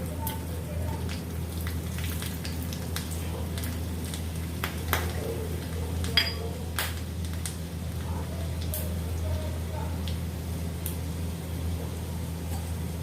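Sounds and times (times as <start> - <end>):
spices frying in oil: 0.0 - 13.0
spoon clinking on pan: 6.2 - 6.4.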